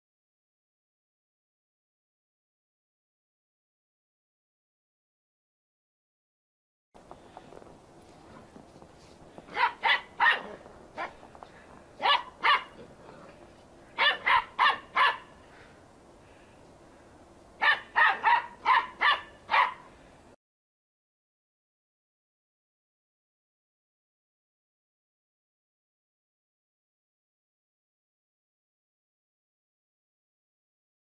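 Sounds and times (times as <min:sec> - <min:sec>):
dog barking: 0:09.5 - 0:11.2, 0:12.0 - 0:12.9, 0:14.0 - 0:15.3, 0:17.6 - 0:19.9.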